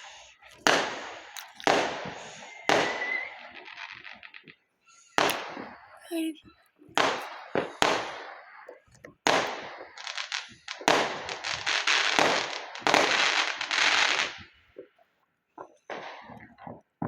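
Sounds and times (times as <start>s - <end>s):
firework bangs: 0.6s - 4.4s, 7.0s - 14.5s
firework crackling: 9.3s - 14.6s.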